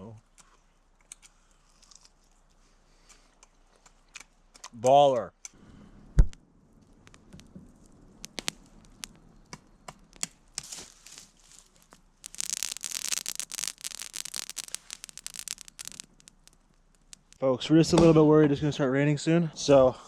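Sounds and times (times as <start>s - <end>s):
sharp clicks and snaps: 3.4s - 4.8s, 6.2s - 17.4s
crackling and rustling: 6.3s - 17.4s.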